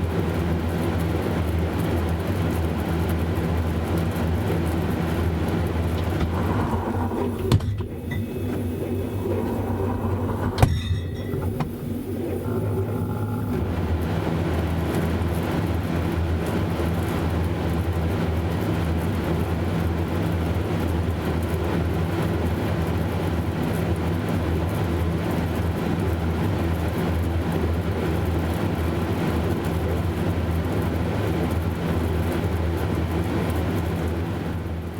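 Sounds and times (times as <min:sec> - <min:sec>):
refrigerator humming: 0:02.6 - 0:20.5.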